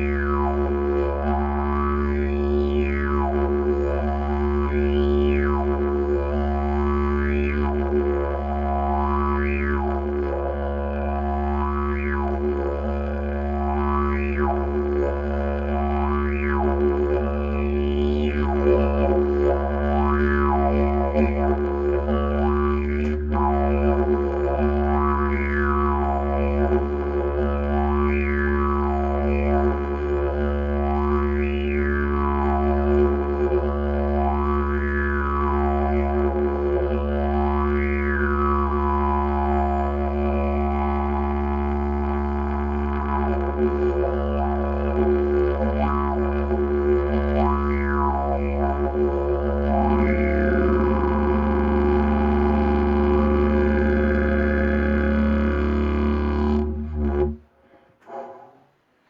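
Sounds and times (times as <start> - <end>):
didgeridoo drone: 0.0 - 57.4.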